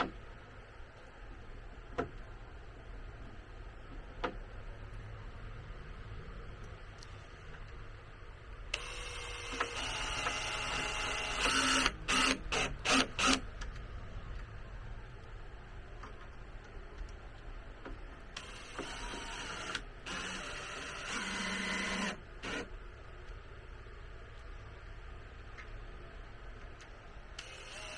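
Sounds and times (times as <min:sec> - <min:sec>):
power drill driving screws: 0:08.8 - 0:13.4, 0:18.4 - 0:22.7, 0:27.4 - 0:27.9.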